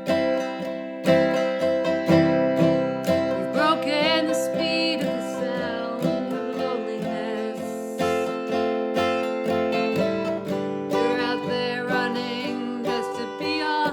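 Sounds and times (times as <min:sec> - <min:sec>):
acoustic guitar strumming: 0:00.0 - 0:13.9.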